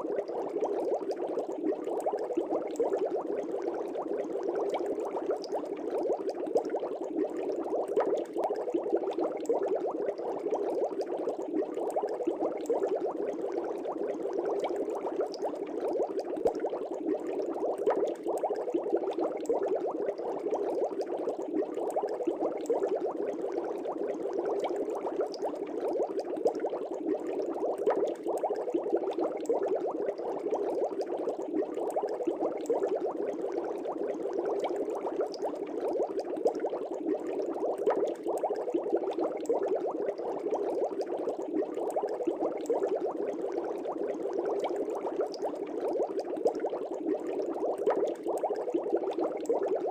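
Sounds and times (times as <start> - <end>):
air bubbling through aquarium water: 0.0 - 49.9.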